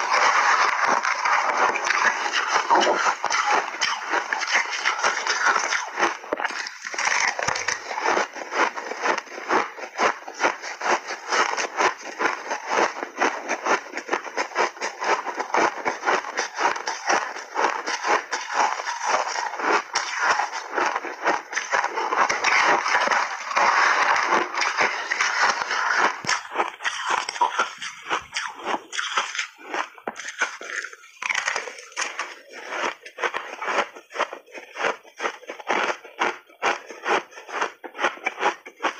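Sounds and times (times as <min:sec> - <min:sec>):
ice crunching while chewed: 0:00.0 - 0:38.9.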